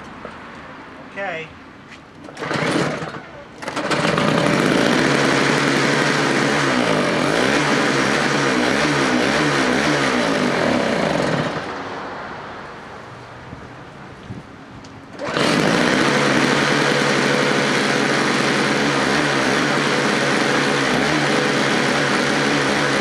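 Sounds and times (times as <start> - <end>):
two-stroke snowblower engine running: 2.2 - 11.7, 15.1 - 23.0.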